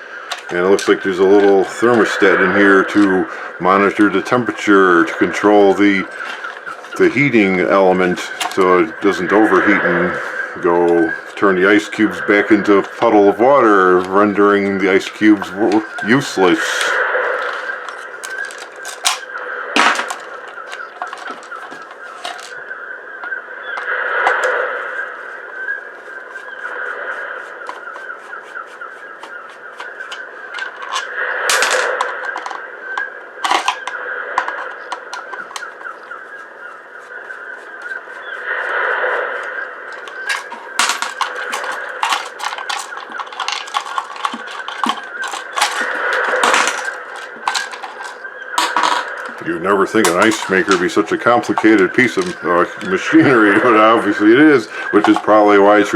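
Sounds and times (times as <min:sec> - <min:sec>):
plastic and metal parts clicking: 0:00.1 - 0:24.6, 0:27.6 - 0:36.0, 0:39.4 - 0:55.9
loud crack: 0:15.6 - 0:22.6, 0:30.5 - 0:32.7, 0:39.9 - 0:50.9.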